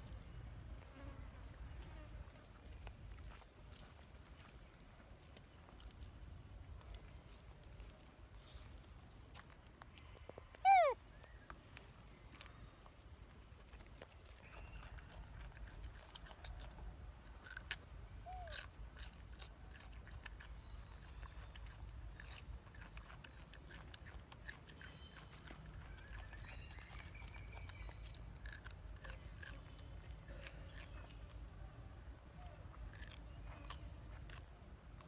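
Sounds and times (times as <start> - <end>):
sharp clicks and crunches: 2.8 - 8.2, 11.5 - 31.4, 32.8 - 35.0
high chirps and squeaks: 10.6 - 11.0.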